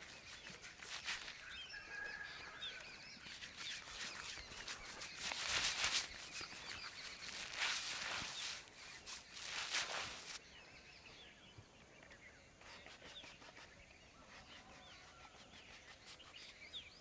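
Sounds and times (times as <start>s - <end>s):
hands rubbing over hair and skin: 0.0s - 10.4s
birds chirping faintly: 0.0s - 17.0s.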